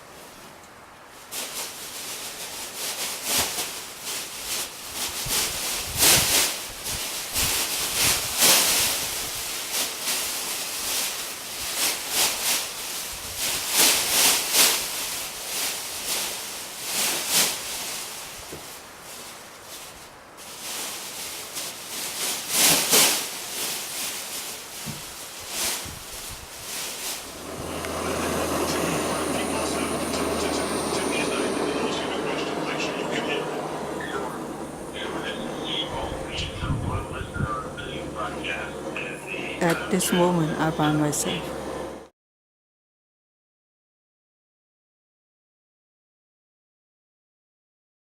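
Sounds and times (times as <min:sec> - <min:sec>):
rustling and scuffing: 0:00.0 - 0:31.3.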